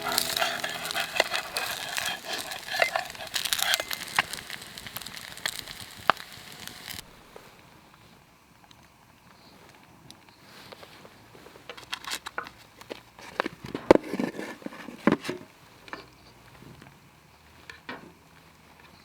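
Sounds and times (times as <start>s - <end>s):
wood fire crackling and popping: 0.0s - 7.1s.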